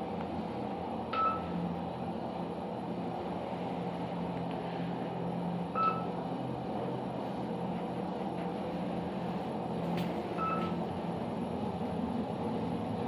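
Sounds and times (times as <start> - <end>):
elevator machine hum: 0.0 - 13.0
short electronic beeps: 5.8 - 6.1, 10.4 - 10.7.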